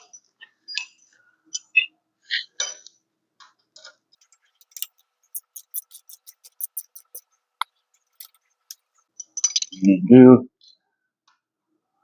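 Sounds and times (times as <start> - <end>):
ratchet wrench clicking: 4.6 - 7.2, 8.2 - 8.4.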